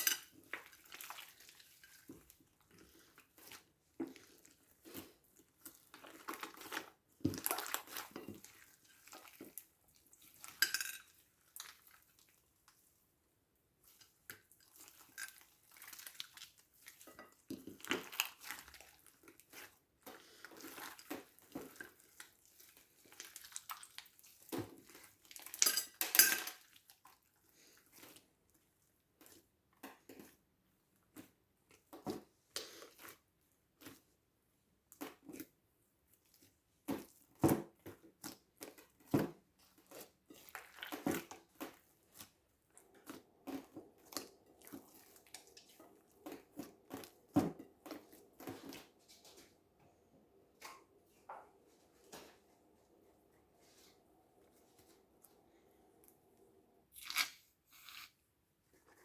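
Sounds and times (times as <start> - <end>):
utensil clinking against bowl: 25.5 - 26.6.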